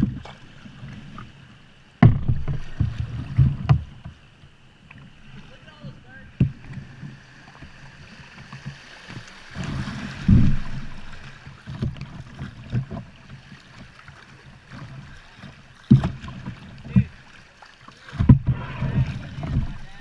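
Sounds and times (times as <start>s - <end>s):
water splashing around kayak: 0.0s - 20.0s
low thumps: 2.0s - 4.0s, 9.6s - 11.2s.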